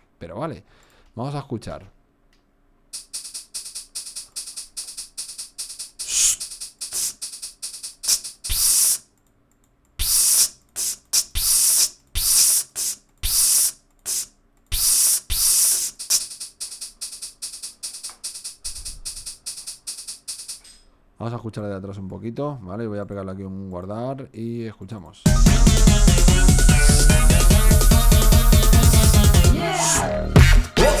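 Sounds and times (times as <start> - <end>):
vocal shaker pattern: 3.0 - 9.0, 10.0 - 20.7, 25.3 - 31.0.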